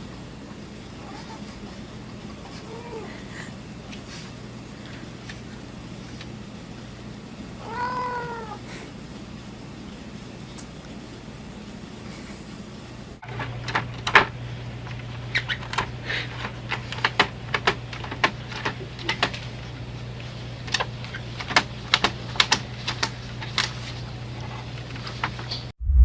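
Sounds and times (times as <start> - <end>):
steady low hum: 25.8 - 26.0.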